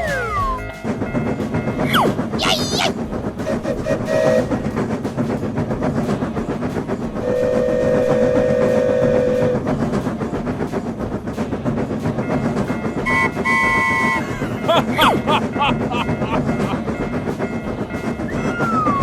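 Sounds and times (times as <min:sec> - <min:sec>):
train horn: 0:00.0 - 0:02.3, 0:03.4 - 0:04.8, 0:07.2 - 0:09.8, 0:12.7 - 0:18.9
train wheels clattering on rails: 0:00.0 - 0:19.0.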